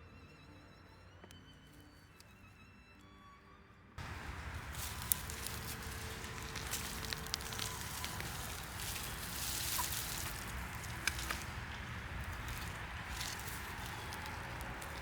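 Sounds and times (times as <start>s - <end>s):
faint music: 0.0s - 15.0s
crackling rustling outdoor noise: 4.0s - 15.0s.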